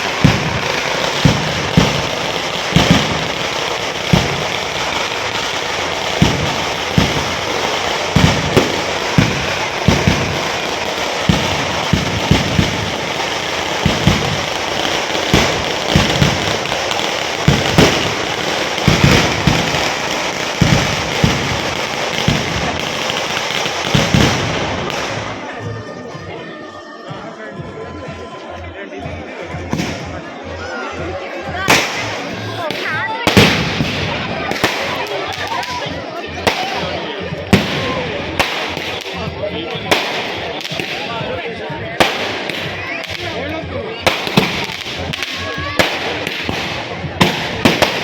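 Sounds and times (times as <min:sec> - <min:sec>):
crackling hiss: 0:00.0 - 0:25.5
firecrackers banging: 0:00.0 - 0:25.6, 0:29.6 - 0:30.4, 0:31.6 - 0:48.0.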